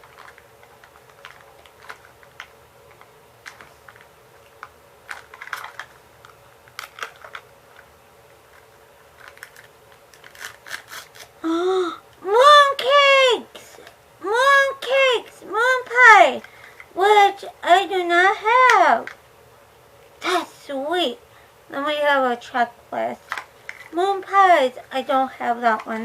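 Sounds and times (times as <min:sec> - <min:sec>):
plastic pieces clicking: 0:00.0 - 0:07.9, 0:08.5 - 0:11.3
plastic wrapper crinkling and tearing: 0:00.0 - 0:07.9, 0:08.5 - 0:11.4.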